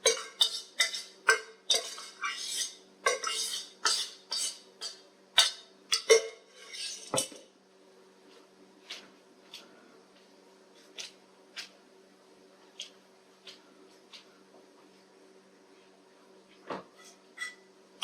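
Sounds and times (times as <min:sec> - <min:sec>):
utensil clinking and scraping pan: 0:00.0 - 0:07.4.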